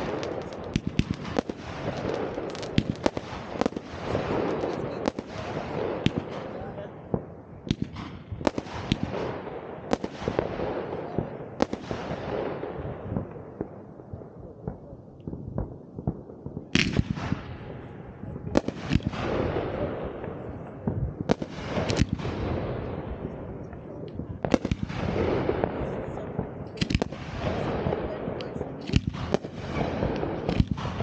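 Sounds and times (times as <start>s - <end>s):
fireworks bangs and crackles: 0.0s - 31.0s.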